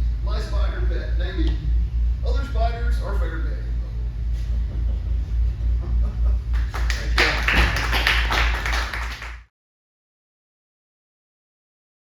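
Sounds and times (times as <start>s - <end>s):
low room hum: 0.0s - 9.5s
audience clapping: 6.4s - 9.5s.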